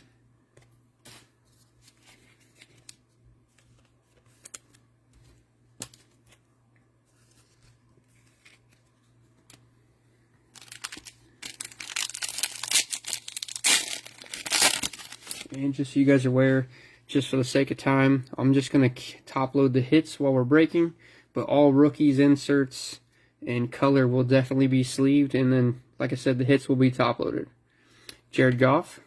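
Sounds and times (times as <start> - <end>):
plastic wrapper ripped open: 10.5 - 15.6.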